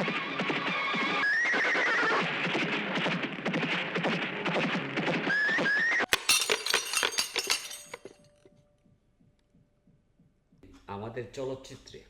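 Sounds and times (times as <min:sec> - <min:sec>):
crash of clattering impacts: 0:06.2 - 0:08.0.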